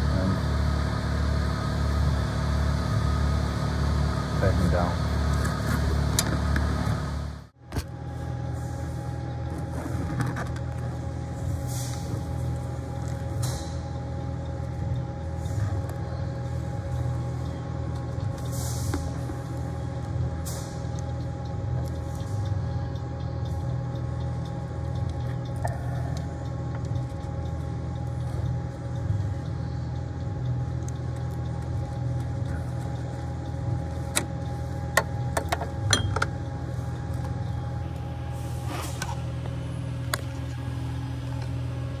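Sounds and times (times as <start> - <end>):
low machine hum: 0.0 - 42.0
sharp clicks and knocks: 34.1 - 36.5.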